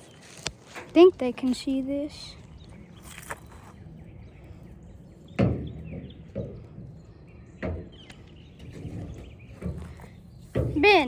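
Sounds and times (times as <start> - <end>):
sharp knocks: 5.4 - 6.9.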